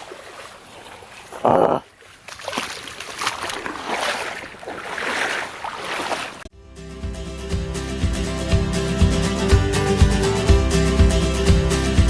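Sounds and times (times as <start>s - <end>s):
creek water splashing: 0.0s - 6.5s.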